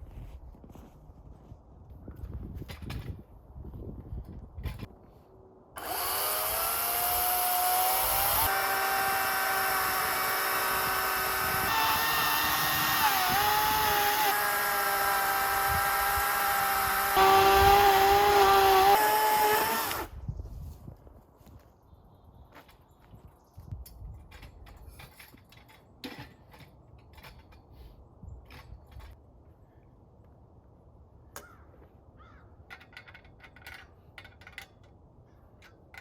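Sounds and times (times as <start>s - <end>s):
chainsaw cutting a log: 5.8s - 20.1s.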